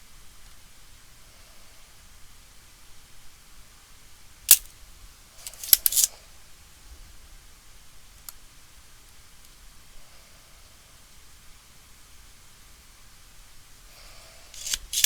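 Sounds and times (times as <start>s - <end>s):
hand tools clicking: 5.4s - 6.1s, 14.5s - 15.0s.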